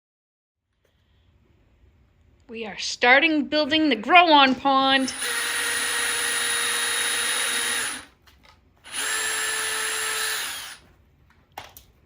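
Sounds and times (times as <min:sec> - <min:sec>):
power drill running: 0:04.8 - 0:08.1, 0:08.8 - 0:10.9.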